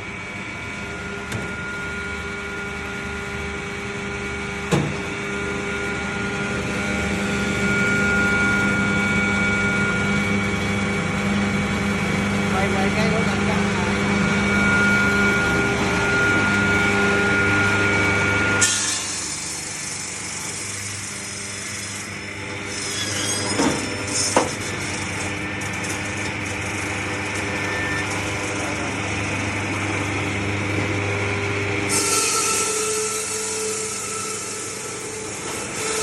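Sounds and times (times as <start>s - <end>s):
motor humming: 0.7s - 32.5s
blades sawing ice: 31.9s - 36.0s.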